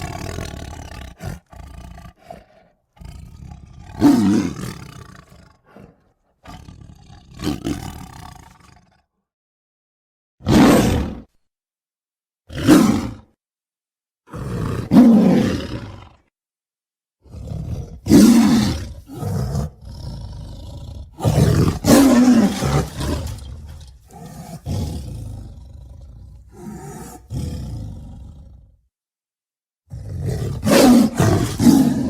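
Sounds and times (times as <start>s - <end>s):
tiger roaring and growling: 0.0s - 9.1s, 10.4s - 11.3s, 12.5s - 13.3s, 14.3s - 16.3s, 17.2s - 28.8s, 29.9s - 32.0s.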